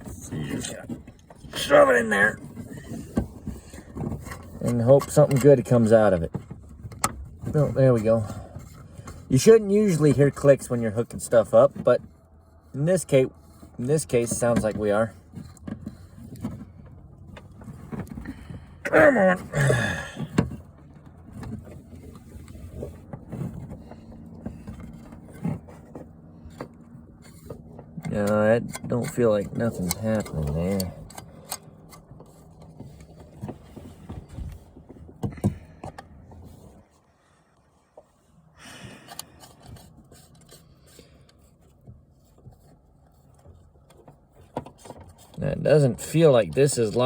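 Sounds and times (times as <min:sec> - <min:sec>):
cable connector scraping and clicking: 0:24.7 - 0:34.6, 0:39.1 - 0:45.4.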